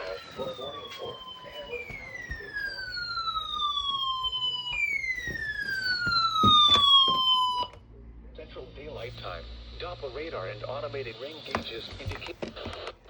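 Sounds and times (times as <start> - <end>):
falling siren-like alert tone: 0.0 - 7.8.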